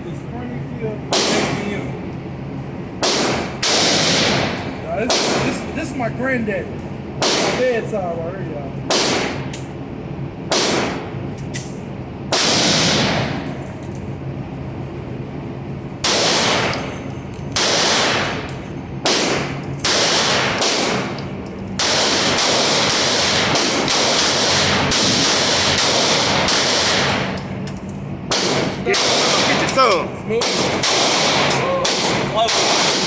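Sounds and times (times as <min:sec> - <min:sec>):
pistol shots echoing indoors: 0:01.1 - 0:01.6, 0:03.0 - 0:05.4, 0:07.2 - 0:07.6, 0:10.5 - 0:11.0, 0:12.3 - 0:13.4, 0:16.0 - 0:27.4, 0:28.3 - 0:29.8, 0:30.4 - 0:33.0.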